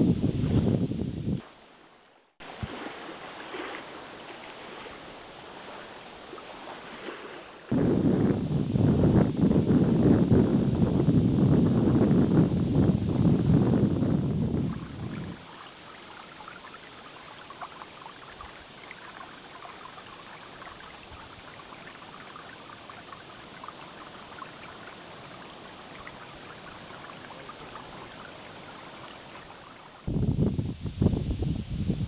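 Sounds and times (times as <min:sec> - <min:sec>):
wind buffeting microphone: 0:00.0 - 0:01.4, 0:07.7 - 0:15.6, 0:19.9 - 0:32.0
stream trickling and babbling: 0:01.4 - 0:07.8, 0:11.6 - 0:30.1.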